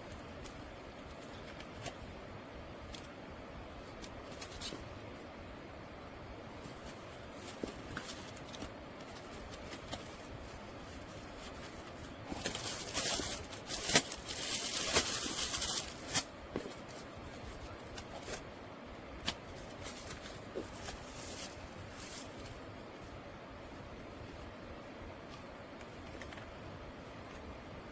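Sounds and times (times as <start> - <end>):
loud rustle: 6.6 - 18.4.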